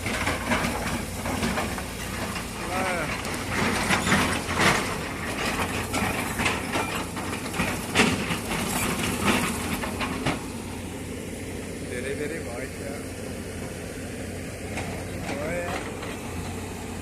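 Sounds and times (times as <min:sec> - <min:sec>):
buckets clanking and scraping rock: 0:00.0 - 0:11.0, 0:14.6 - 0:17.0
excavator engines running: 0:00.0 - 0:17.0.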